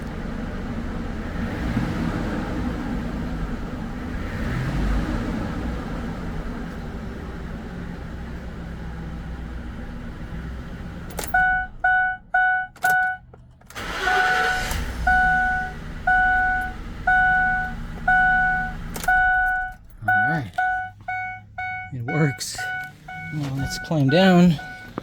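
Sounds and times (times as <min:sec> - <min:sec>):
car engine idling: 0:00.0 - 0:25.0
electronic warning chime dinging: 0:11.3 - 0:13.2, 0:14.0 - 0:25.0.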